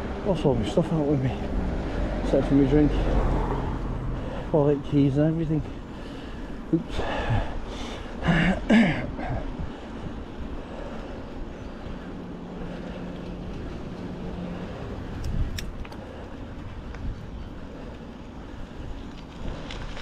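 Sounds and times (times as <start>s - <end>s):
wind and tyre rumble: 0.0s - 20.0s
sharp clicks: 15.1s - 16.0s.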